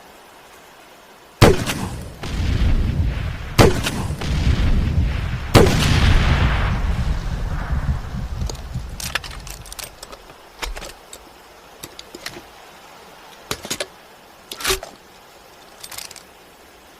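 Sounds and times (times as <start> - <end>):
grenade launcher shot rumble: 1.4 - 7.0
metallic clicks and clanks: 15.7 - 16.3.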